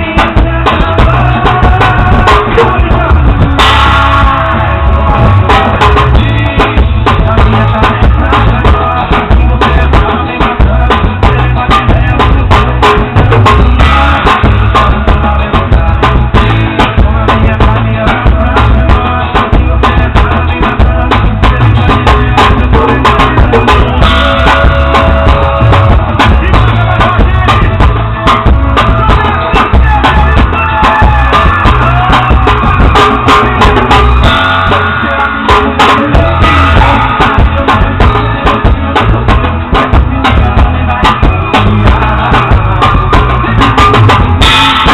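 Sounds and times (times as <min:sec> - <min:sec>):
drum kit played with skewers: 0:00.0 - 0:44.9
recorded music with bass: 0:00.0 - 0:44.9.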